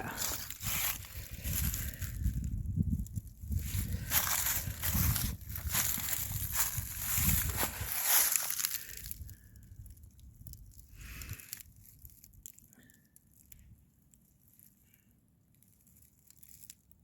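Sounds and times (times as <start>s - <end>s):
footsteps crunching on dry ground: 0.0s - 9.4s.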